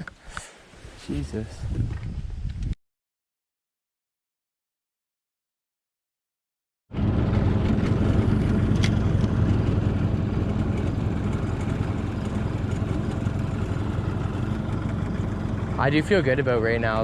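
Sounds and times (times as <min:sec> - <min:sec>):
outboard motor running: 0:07.0 - 0:17.0.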